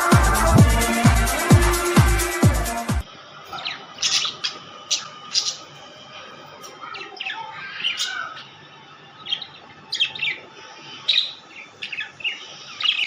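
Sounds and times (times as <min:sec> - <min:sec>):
small parrots chirping: 0:03.5 - 0:05.7, 0:06.8 - 0:08.6, 0:09.2 - 0:10.4, 0:11.0 - 0:13.0.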